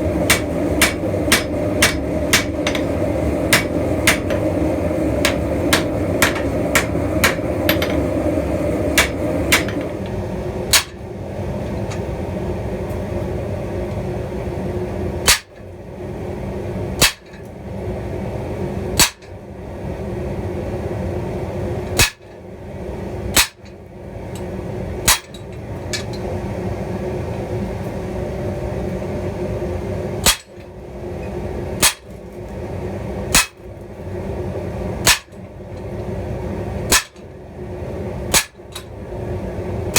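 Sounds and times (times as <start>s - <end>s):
steady hum: 0.0s - 39.9s
hammer striking steel on anvil: 0.3s - 4.4s, 5.2s - 8.1s, 9.0s - 9.9s, 10.7s - 11.0s, 15.3s - 15.5s, 17.0s - 17.4s, 19.0s - 19.3s, 30.2s - 30.5s, 31.8s - 32.1s, 33.3s - 33.6s, 35.0s - 35.4s, 36.9s - 37.2s, 38.3s - 38.6s.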